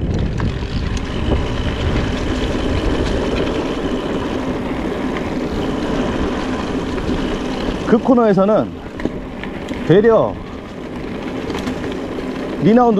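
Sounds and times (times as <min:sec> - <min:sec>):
bike tyres rumbling and rattling: 0:00.0 - 0:12.9
wind rushing over microphone: 0:00.0 - 0:12.9.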